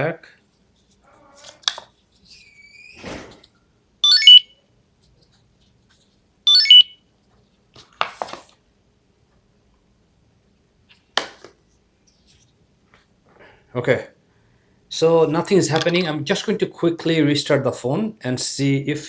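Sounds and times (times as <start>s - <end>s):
electronic beep-chimes: 4.0s - 4.5s, 6.5s - 6.9s.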